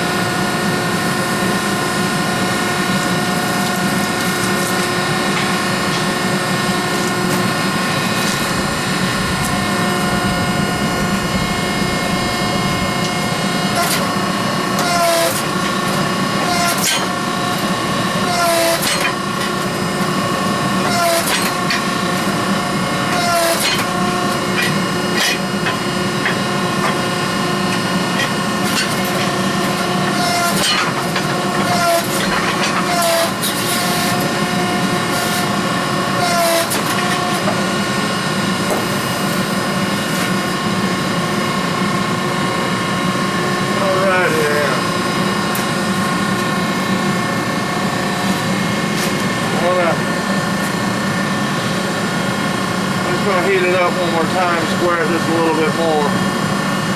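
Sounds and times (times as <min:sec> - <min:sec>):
forge machinery humming: 0:00.0 - 0:56.9.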